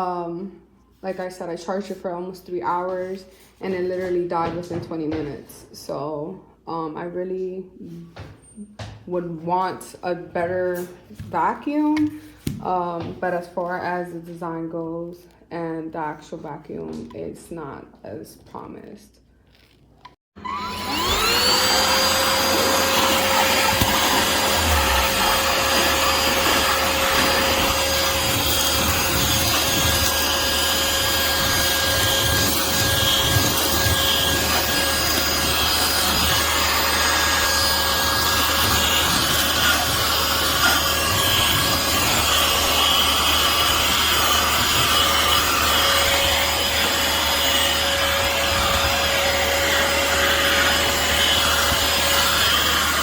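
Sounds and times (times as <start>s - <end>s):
handheld vacuum motor whine: 20.4s - 53.0s.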